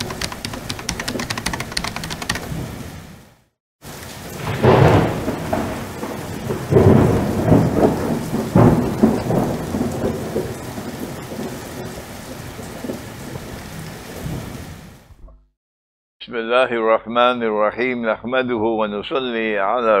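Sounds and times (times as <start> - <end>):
rain hissing: 3.8 - 15.0
thunder rumbling: 4.2 - 13.5.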